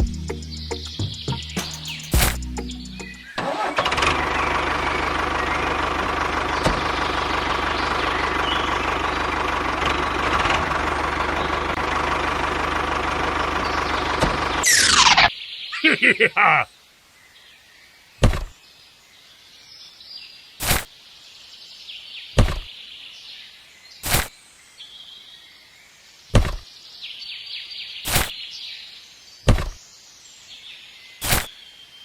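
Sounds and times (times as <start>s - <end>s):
faint bird chirping: 0.0s - 3.4s, 7.6s - 9.4s, 13.6s - 32.0s
sharp knocks: 18.2s - 18.5s, 22.4s - 22.7s, 26.4s - 26.6s, 29.5s - 29.8s.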